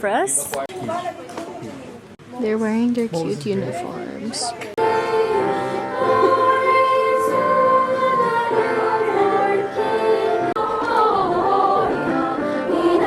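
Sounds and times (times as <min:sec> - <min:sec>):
choir singing in harmony: 0:04.8 - 0:13.0.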